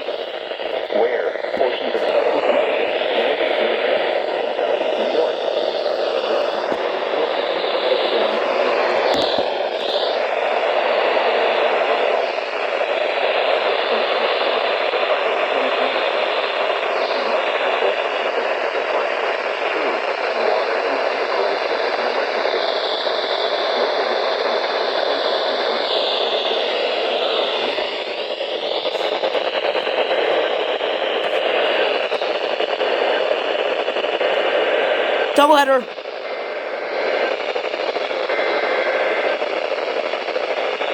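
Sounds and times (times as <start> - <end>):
radio static hiss: 0.0 - 11.0, 28.8 - 32.6.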